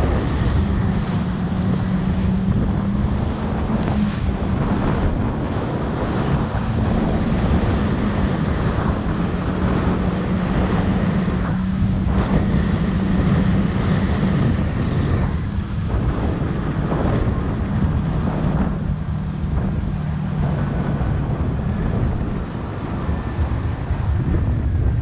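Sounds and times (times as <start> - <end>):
jet ski engine running: 0.0 - 25.0
wind on microphone: 0.0 - 25.0.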